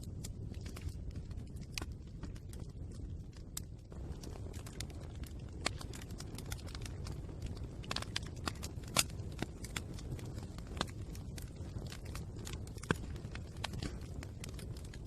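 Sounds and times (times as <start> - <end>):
fire crackling: 0.0 - 15.0.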